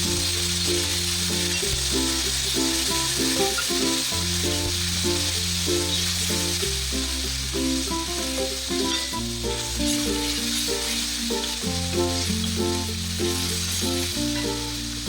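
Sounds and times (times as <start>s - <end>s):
background music: 0.0s - 15.0s
food sizzling in a frying pan: 0.0s - 15.0s.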